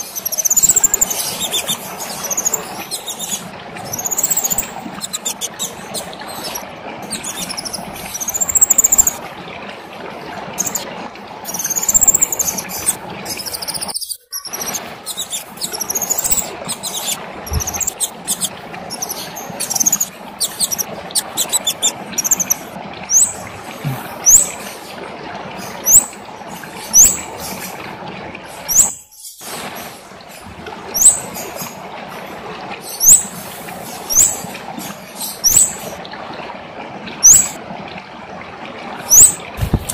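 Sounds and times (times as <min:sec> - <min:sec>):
songbird singing: 0:00.0 - 0:09.2, 0:10.6 - 0:10.8, 0:11.5 - 0:23.4, 0:28.7 - 0:29.4, 0:37.2 - 0:37.6.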